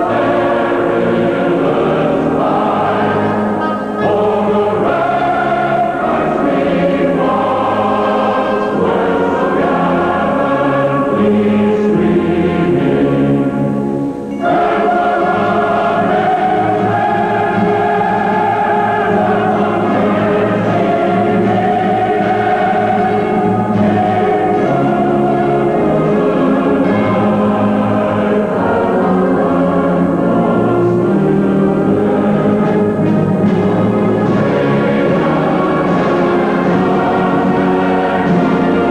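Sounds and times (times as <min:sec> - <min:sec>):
choir singing sustained chords: 0:00.0 - 0:38.9.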